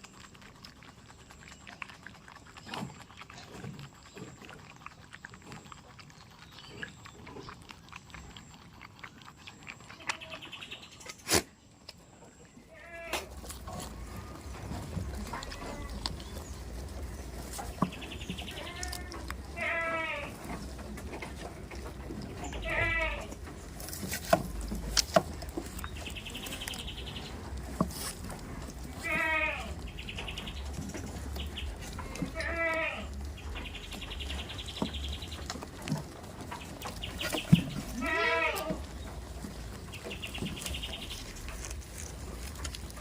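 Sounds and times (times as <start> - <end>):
goats bleating: 12.7 - 16.5, 17.6 - 20.7, 22.3 - 23.6, 28.8 - 30.3, 31.8 - 33.4, 37.5 - 39.0.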